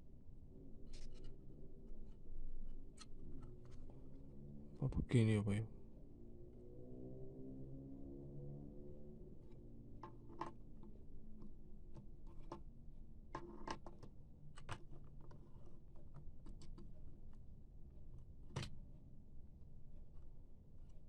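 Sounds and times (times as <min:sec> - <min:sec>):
small clicks and taps of parts: 0:10.0 - 0:12.7, 0:13.3 - 0:17.4, 0:18.1 - 0:18.8.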